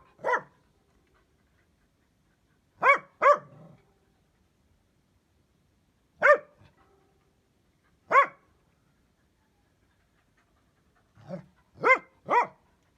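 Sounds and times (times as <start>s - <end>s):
dog barking: 0.0s - 0.5s, 2.8s - 3.6s, 6.2s - 6.6s, 8.1s - 8.4s, 11.3s - 12.6s.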